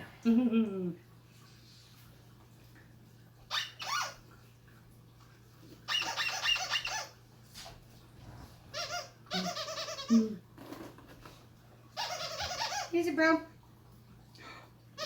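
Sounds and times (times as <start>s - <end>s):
dog toy squeaking: 3.5s - 4.2s, 5.9s - 7.1s, 8.7s - 10.3s, 12.0s - 12.9s.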